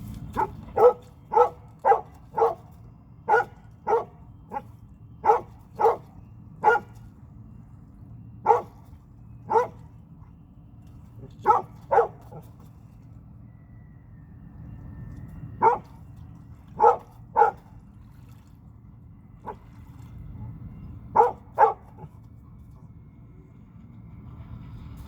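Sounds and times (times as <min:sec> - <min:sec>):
dog barking: 0:00.4 - 0:02.7, 0:03.3 - 0:07.0, 0:08.5 - 0:08.8, 0:09.5 - 0:09.8, 0:11.4 - 0:12.4, 0:15.6 - 0:15.9, 0:16.8 - 0:17.6, 0:21.2 - 0:22.1.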